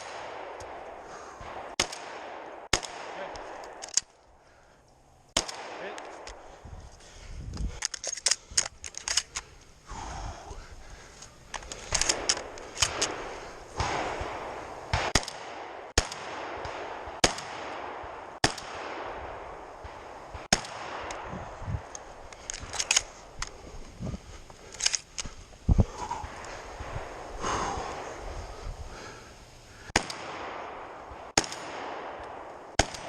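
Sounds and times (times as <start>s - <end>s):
shotgun shots with echo: 1.4s - 3.7s, 13.8s - 21.3s, 29.9s - 33.0s.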